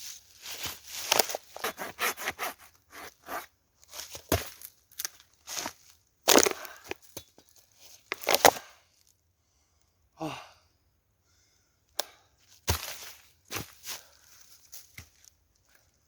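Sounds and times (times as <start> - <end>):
wood snapping: 6.3 - 6.7
dry wood cracking: 6.3 - 7.1, 8.1 - 8.6.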